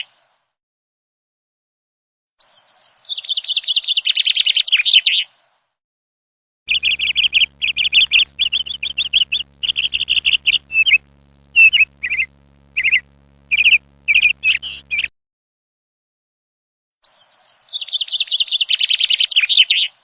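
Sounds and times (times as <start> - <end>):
bird chirping: 6.7 - 15.1
faint low hum: 6.7 - 15.1.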